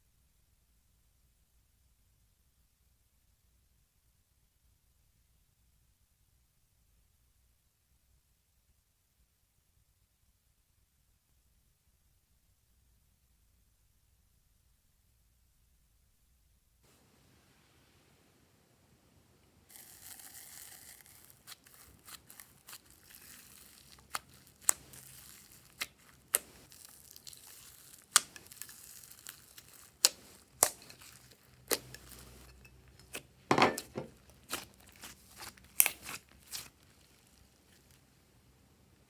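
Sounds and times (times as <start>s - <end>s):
slime squished by hand: 19.7s - 38.0s.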